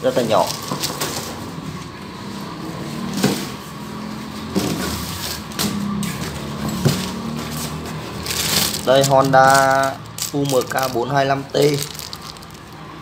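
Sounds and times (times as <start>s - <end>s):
low background hum: 0.0s - 13.0s
knocks and rustles of handling: 0.2s - 1.5s, 4.4s - 12.7s.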